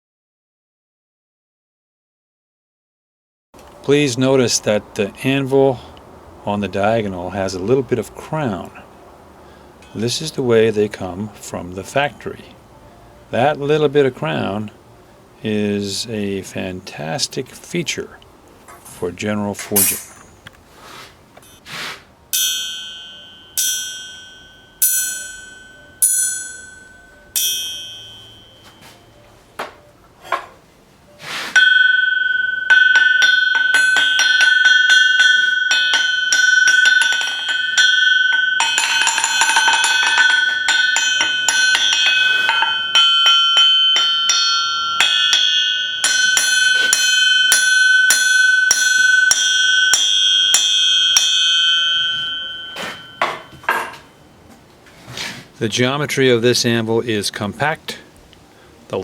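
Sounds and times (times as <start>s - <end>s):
hammer striking ringing anvil: 9.8s - 11.2s, 19.7s - 20.5s, 22.3s - 29.7s, 31.6s - 54.2s.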